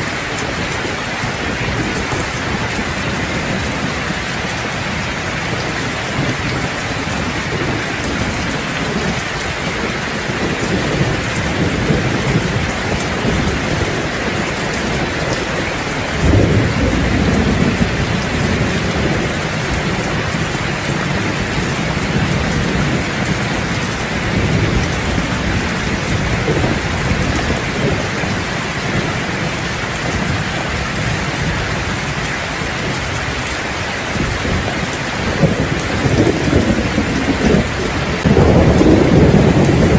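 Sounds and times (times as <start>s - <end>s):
heavy rain on a roof: 0.0s - 39.9s
thunder rumbling: 0.0s - 39.9s.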